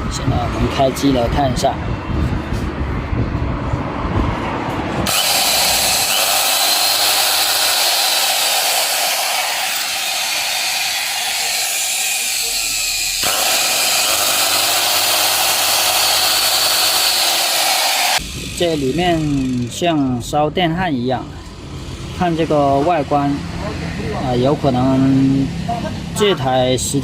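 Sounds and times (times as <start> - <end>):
stone cutter motor running: 5.1 - 19.8.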